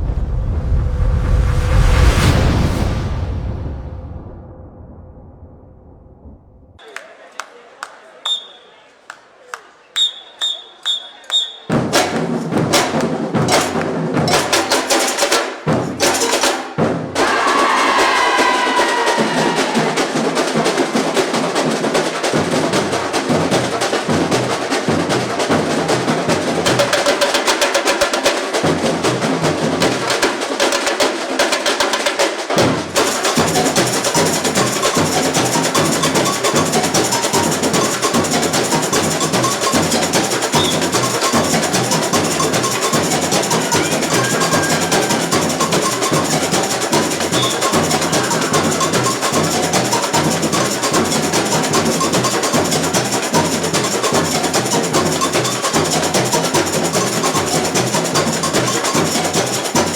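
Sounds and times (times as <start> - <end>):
deep bass drums: 0.0 - 6.8
samba drums and percussion: 10.0 - 59.9.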